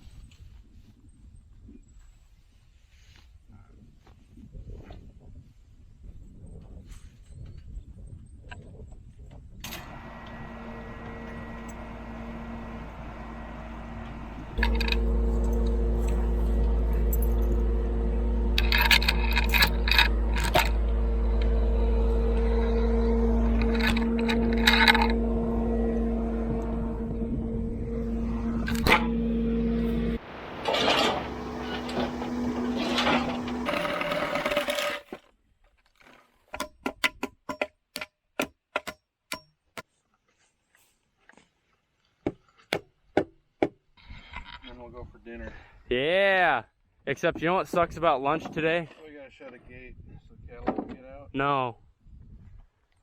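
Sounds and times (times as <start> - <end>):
engine humming: 9.7 - 35.1
metallic clinks and rattles: 18.6 - 20.8.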